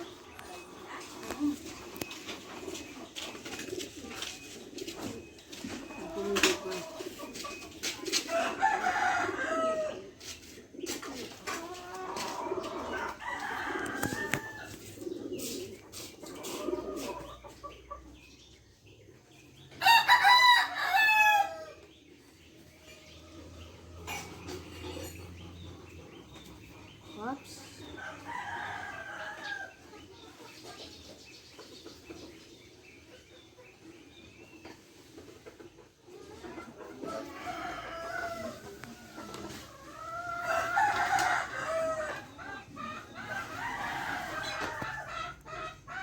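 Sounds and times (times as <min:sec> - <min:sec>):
chicken clucking: 0:00.0 - 0:46.0
rooster crowing: 0:19.8 - 0:21.8, 0:40.4 - 0:42.3.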